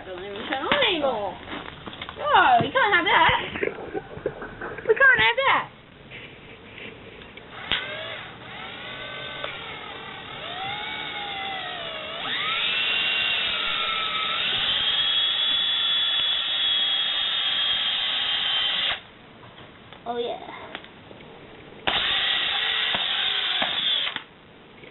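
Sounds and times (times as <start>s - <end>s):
power tool motor whining: 7.5s - 19.0s, 21.8s - 24.2s.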